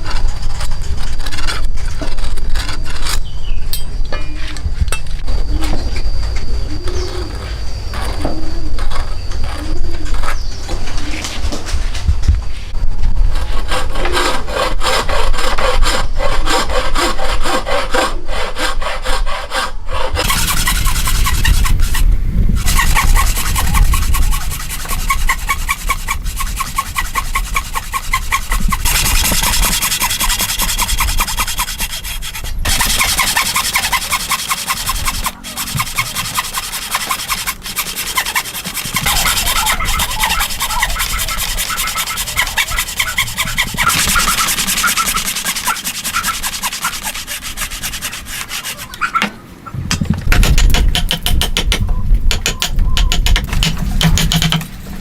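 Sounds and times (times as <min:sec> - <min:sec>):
tool rubbing across wood: 0:13.4 - 0:49.3, 0:53.0 - 0:54.7.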